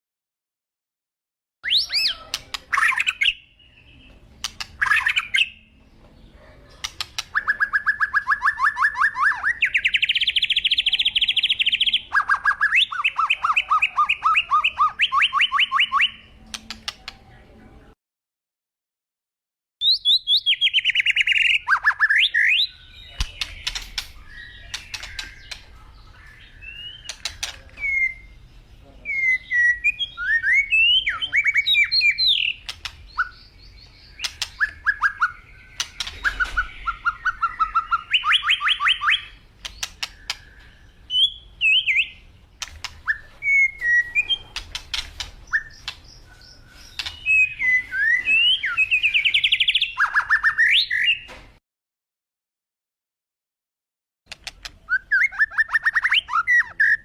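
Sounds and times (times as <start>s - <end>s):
birds chirping and calling: 1.6s - 18.0s, 19.8s - 51.6s, 54.3s - 57.0s
sharp clicks: 4.4s - 4.8s, 6.8s - 7.4s, 16.5s - 17.2s, 23.2s - 25.7s, 27.0s - 27.8s, 32.6s - 33.1s, 34.2s - 34.8s, 35.8s - 36.7s, 39.6s - 40.6s, 42.6s - 43.1s, 44.1s - 46.2s, 47.0s - 47.3s, 54.3s - 54.8s
fast rattling bird trills: 4.4s - 5.6s, 20.0s - 28.4s, 29.5s - 50.7s.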